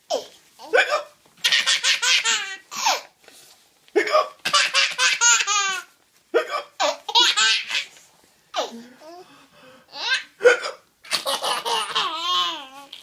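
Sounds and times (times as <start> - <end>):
baby giggling and laughing: 11.0 - 12.9.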